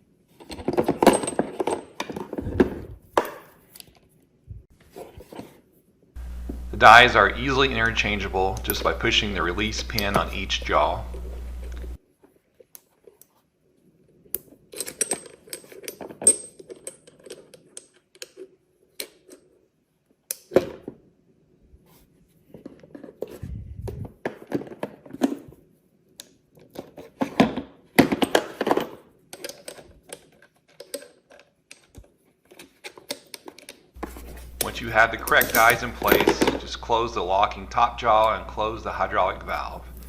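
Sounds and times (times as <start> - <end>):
metal dies clicking and knocking: 33.5 - 37.2.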